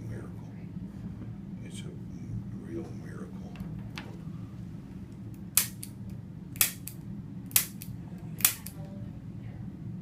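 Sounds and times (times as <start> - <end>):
sharp mechanical clicks: 6.6 - 8.8.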